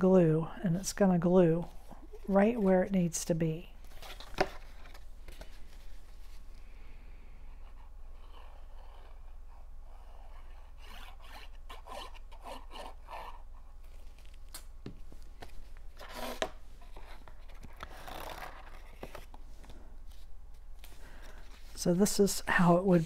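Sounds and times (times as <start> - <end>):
card scraping and rubbing: 7.5 - 14.3, 15.9 - 21.8.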